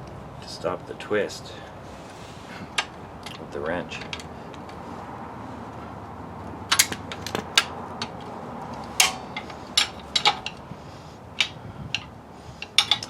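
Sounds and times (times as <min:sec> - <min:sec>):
steel hand tools clinking: 0:11.4 - 0:13.0.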